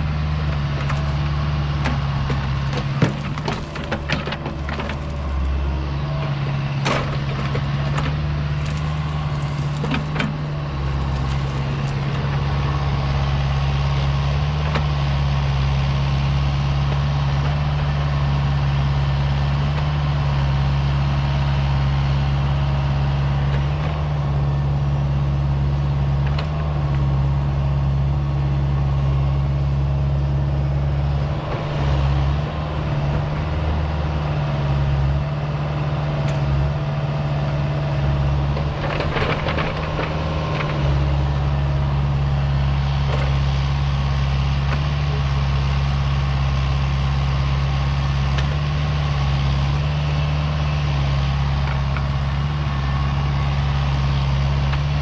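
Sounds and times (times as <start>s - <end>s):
heavy diesel engine running: 0.0s - 55.0s
clanking and rattling: 0.8s - 12.5s.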